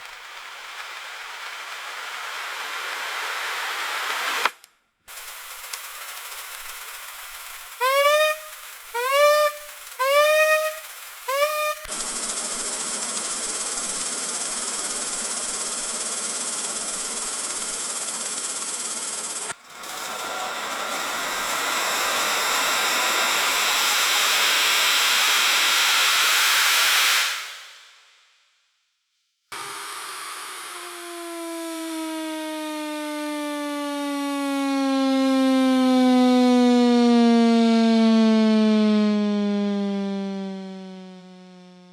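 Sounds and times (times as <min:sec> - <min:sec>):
aeration fan air rush: 0:05.1 - 0:27.9, 0:29.6 - 0:32.8.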